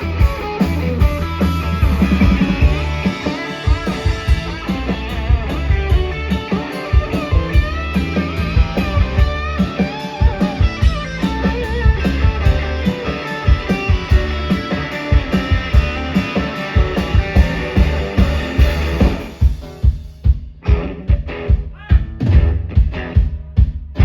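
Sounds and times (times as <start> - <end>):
electric guitar bending notes: 0.0 - 19.8
bass guitar: 0.0 - 24.0
drum beat: 0.0 - 24.0.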